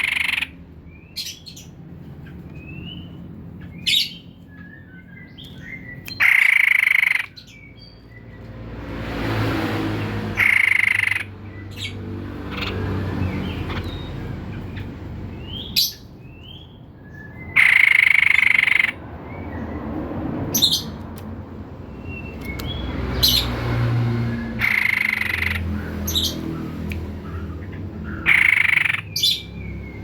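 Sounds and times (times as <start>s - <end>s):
bird chirps and clicks: 0.0s - 8.6s, 20.6s - 21.4s, 22.1s - 23.5s, 24.6s - 30.0s
harsh buzzing bird call: 6.2s - 7.3s, 10.3s - 11.3s, 24.6s - 25.6s, 28.2s - 29.4s.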